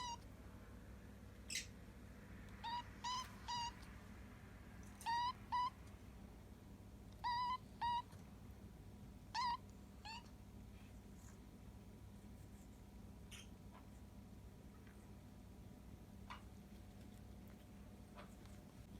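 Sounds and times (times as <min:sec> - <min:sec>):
kitten crying: 0:00.0 - 0:00.2, 0:02.6 - 0:03.8, 0:05.0 - 0:05.8, 0:07.2 - 0:08.2, 0:09.3 - 0:10.3.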